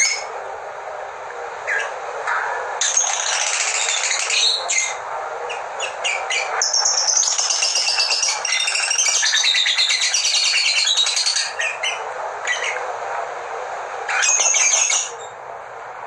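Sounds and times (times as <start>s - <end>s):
songbird chattering song: 2.8s - 12.8s.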